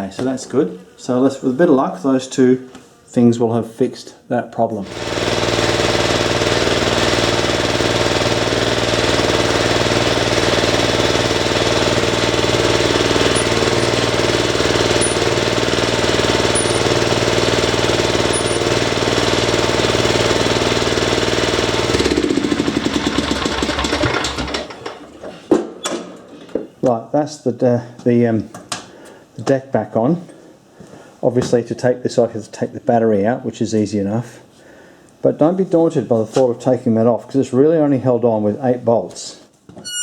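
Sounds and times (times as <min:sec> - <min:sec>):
ride-on mower engine running: 0:04.9 - 0:25.0.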